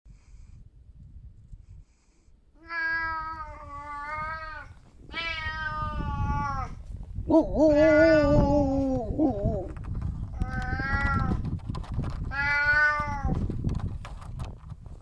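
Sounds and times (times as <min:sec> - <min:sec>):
cat meowing: 0:02.6 - 0:06.8, 0:10.4 - 0:11.4, 0:12.3 - 0:13.4.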